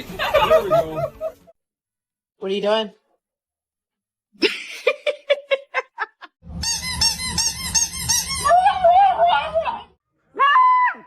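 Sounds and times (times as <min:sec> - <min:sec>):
short squeaks: 0:06.5 - 0:08.5.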